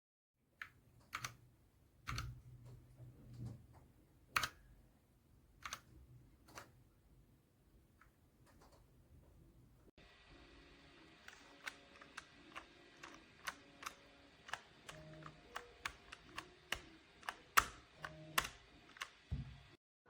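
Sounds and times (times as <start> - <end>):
mechanical keyboard keys clacking: 2.1 - 2.4, 11.3 - 19.3.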